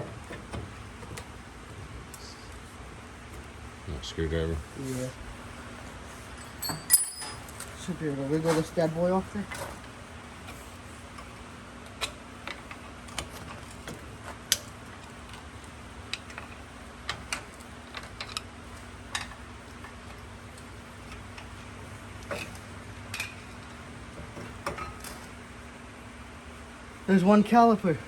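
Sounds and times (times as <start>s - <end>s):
steady low hum: 0.0s - 28.0s
metal clicks and clinks: 6.4s - 7.7s.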